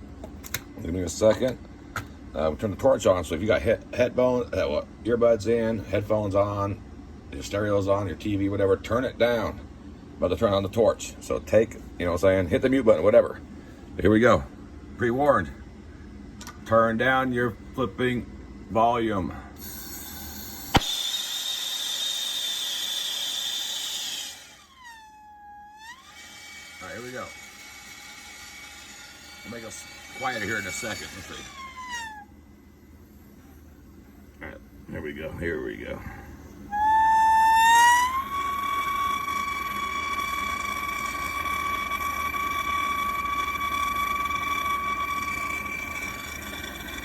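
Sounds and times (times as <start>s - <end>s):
gas torch hissing: 19.6s - 24.8s
high-pitched whistle: 19.6s - 26.1s, 36.7s - 47.0s
gas torch lighting pop: 20.6s - 21.2s.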